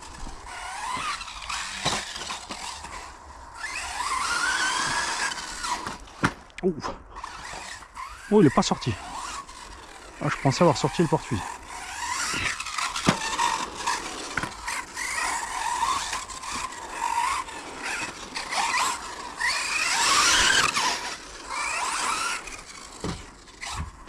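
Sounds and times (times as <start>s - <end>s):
electric motor whining: 0.0s - 24.0s.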